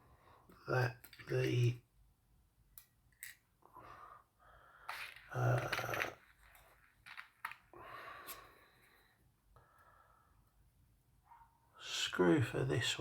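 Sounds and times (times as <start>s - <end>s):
man breathing: 3.7s - 5.3s, 7.7s - 10.5s.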